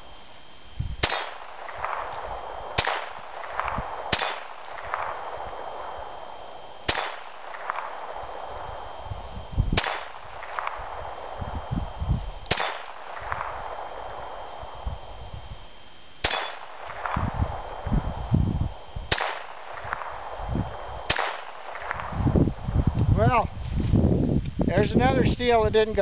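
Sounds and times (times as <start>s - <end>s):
bullet ringing steel target: 1.0s - 5.9s, 6.8s - 8.4s, 9.8s - 11.0s, 12.5s - 14.4s, 16.2s - 17.3s, 19.1s - 20.1s, 21.1s - 22.1s
pistol shots: 1.0s - 9.0s, 9.8s - 11.4s, 12.4s - 14.8s, 16.2s - 17.9s, 19.1s - 22.1s.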